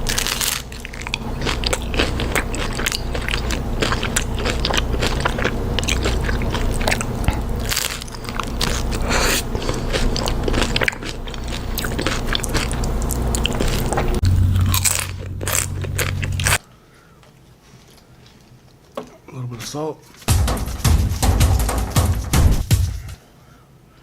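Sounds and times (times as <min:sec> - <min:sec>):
chewing crunchy chips: 0:00.0 - 0:16.6.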